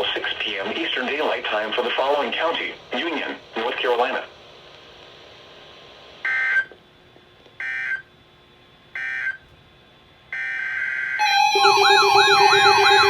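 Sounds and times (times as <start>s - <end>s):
electronic siren wailing: 10.4s - 13.0s
warbling digital data tones: 11.2s - 13.0s.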